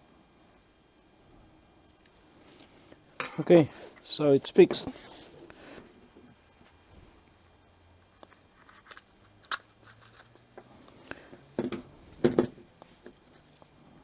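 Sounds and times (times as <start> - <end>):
plastic parts clicking and knocking: 8.2 - 10.7, 11.6 - 13.2.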